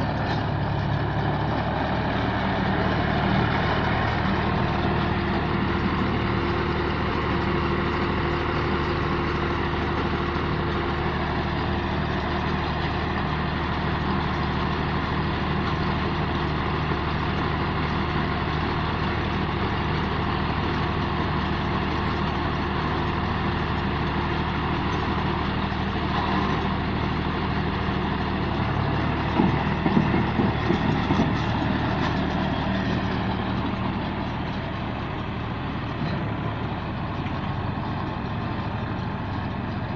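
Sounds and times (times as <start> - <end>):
baler machine engine running: 0.0 - 39.9
clattering knocks: 29.2 - 32.5.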